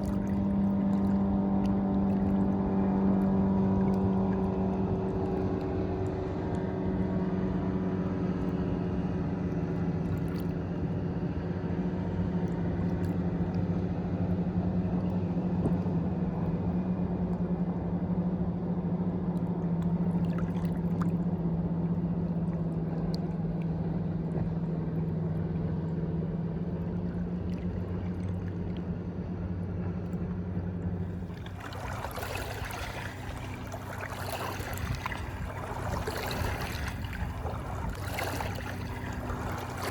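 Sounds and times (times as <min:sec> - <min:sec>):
water rushing: 0:00.0 - 0:05.3, 0:31.0 - 0:39.9
motor humming: 0:31.0 - 0:39.9.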